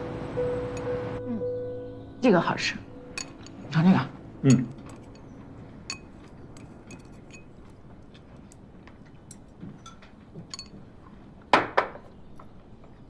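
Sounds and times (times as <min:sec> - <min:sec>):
chopsticks clinking on dishes: 0:03.1 - 0:11.2.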